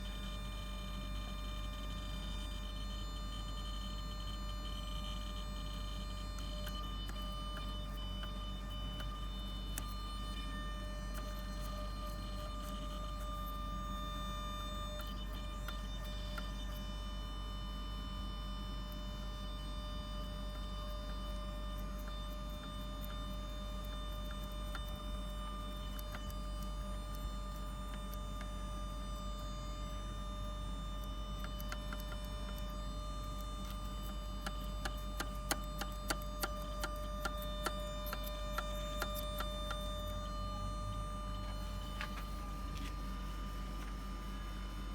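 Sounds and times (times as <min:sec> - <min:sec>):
irregular ticks and clicks: 0:06.3 - 0:16.8, 0:20.5 - 0:29.6, 0:30.3 - 0:40.4
low hum: 0:35.4 - 0:44.9
high whine: 0:36.3 - 0:44.9.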